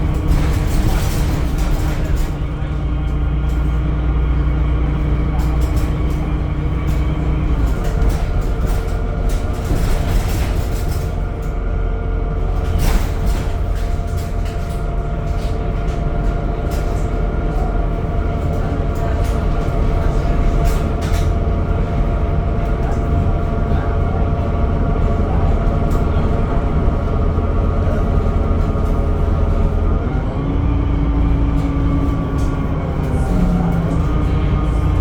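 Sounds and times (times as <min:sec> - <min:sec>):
bus engine rumble: 0:00.0 - 0:35.0.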